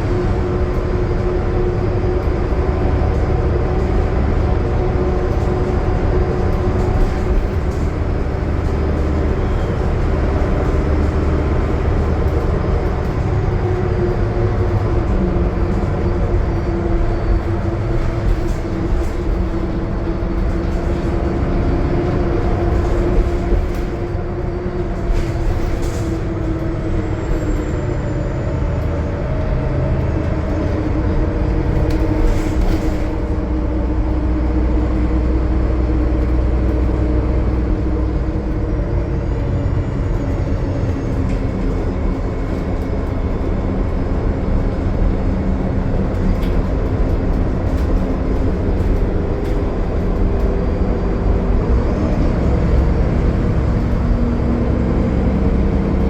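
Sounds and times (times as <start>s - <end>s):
bus diesel engine cruising: 0.0s - 56.0s
low road noise rumble: 0.0s - 56.0s.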